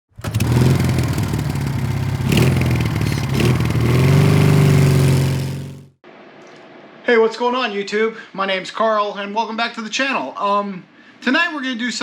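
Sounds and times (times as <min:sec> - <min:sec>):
motorcycle engine revving: 0:00.1 - 0:06.0.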